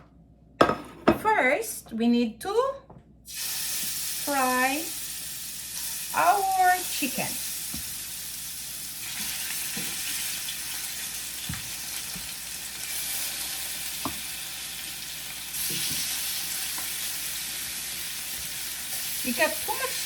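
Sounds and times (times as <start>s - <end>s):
chicken sizzling in oil: 3.3s - 20.0s.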